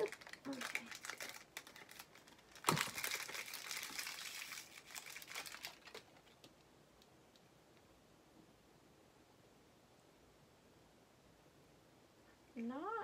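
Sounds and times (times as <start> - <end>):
packaging wrapper crinkling: 0.0 - 6.6.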